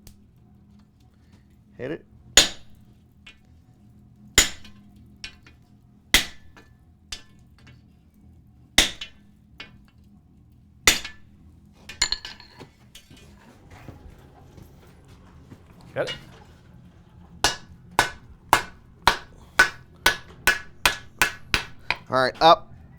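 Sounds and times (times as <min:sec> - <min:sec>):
sledgehammer striking chisel on steel: 0:02.4 - 0:02.8, 0:04.4 - 0:05.5, 0:06.2 - 0:07.4, 0:08.8 - 0:09.8, 0:10.9 - 0:11.3, 0:11.9 - 0:22.6.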